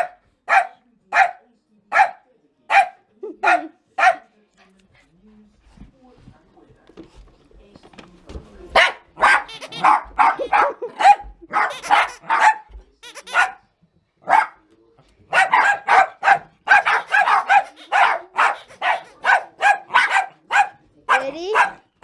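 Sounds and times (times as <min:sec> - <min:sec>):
dog barking: 0:00.0 - 0:04.3, 0:08.7 - 0:14.7, 0:15.3 - 0:22.0.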